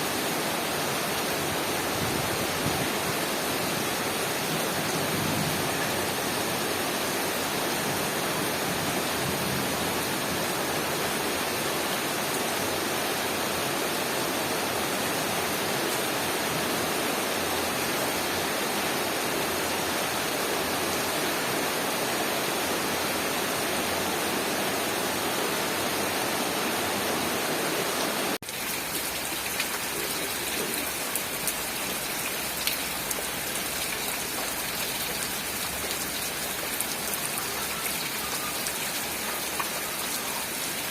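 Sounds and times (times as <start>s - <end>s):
heavy rain: 0.0s - 40.9s
raindrops ticking on a surface: 28.4s - 40.6s.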